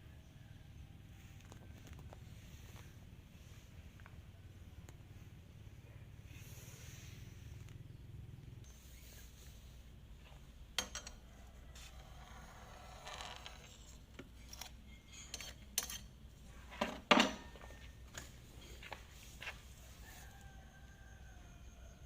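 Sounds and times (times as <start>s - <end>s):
small metal tools clinking: 10.8s - 11.3s, 13.1s - 16.2s.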